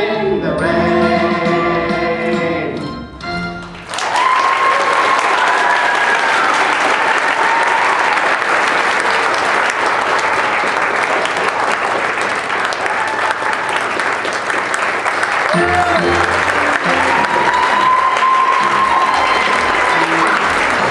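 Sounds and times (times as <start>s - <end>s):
song: 0.0s - 4.0s, 15.4s - 20.9s
audience applause: 3.8s - 20.9s.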